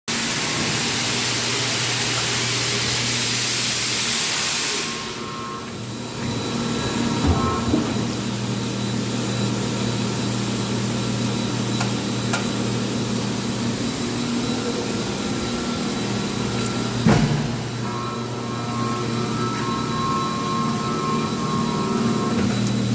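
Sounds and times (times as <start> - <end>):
loud hiss: 0.1 - 5.3
factory machinery humming: 0.1 - 22.9.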